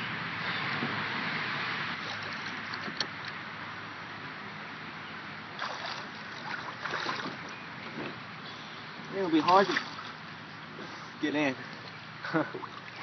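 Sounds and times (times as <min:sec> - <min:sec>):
water sloshing and splashing: 0:02.0 - 0:03.3, 0:05.5 - 0:11.1, 0:11.7 - 0:13.0.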